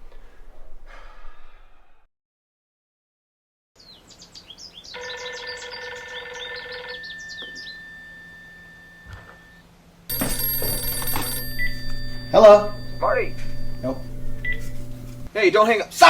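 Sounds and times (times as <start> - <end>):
small birds chirping: 3.8 - 7.8
telephone ringing: 5.0 - 15.3
steady multi-pitched tone: 7.5 - 15.3.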